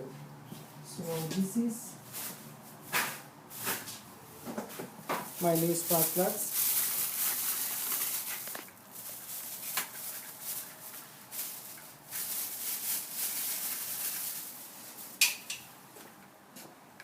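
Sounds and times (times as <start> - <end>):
packaging rustling: 5.2 - 15.2.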